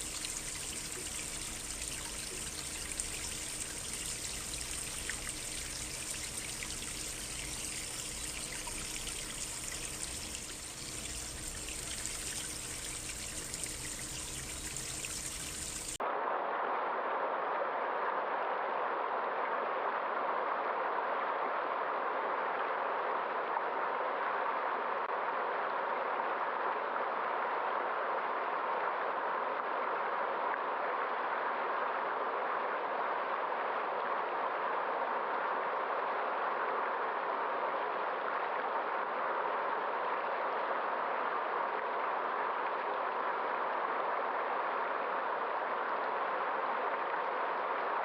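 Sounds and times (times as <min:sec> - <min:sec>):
stream trickling and babbling: 0:00.0 - 0:16.0.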